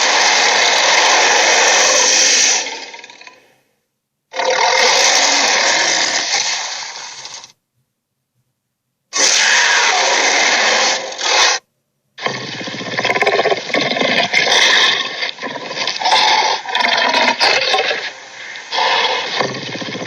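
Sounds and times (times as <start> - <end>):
dragon growls: 0.0 - 3.5, 4.3 - 6.9, 12.2 - 20.0.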